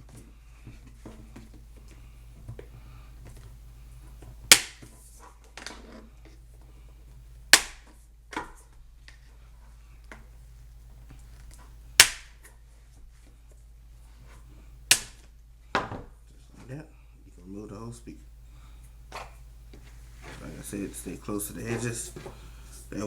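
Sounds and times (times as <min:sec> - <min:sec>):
clippers snapping plastic: 0:04.5 - 0:04.9, 0:07.5 - 0:08.0, 0:12.0 - 0:12.4, 0:14.9 - 0:15.3.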